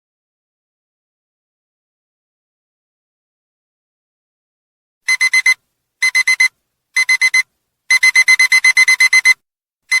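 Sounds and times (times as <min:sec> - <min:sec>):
alarm clock beeping: 0:05.1 - 0:10.0.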